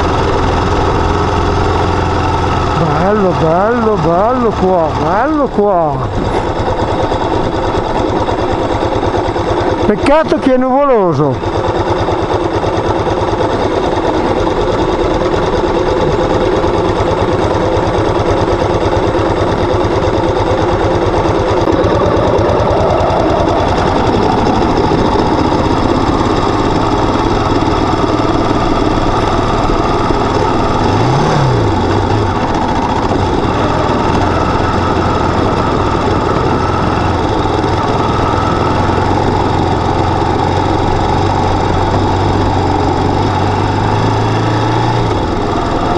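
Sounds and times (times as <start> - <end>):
motorcycle engine running: 0.0 - 45.9.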